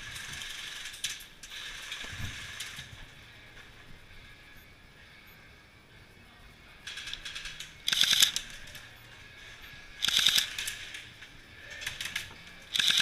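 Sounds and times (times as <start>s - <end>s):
airsoft gun full-auto bursts: 6.9s - 8.6s, 10.0s - 11.1s, 12.0s - 13.0s.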